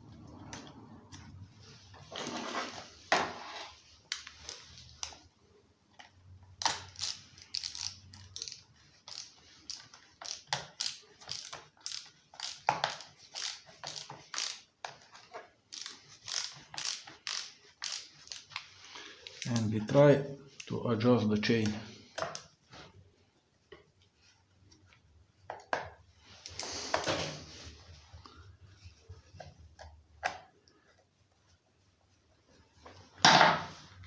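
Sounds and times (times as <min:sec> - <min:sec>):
hand tool clicks and scrapes: 0:06.6 - 0:14.7, 0:15.7 - 0:19.6.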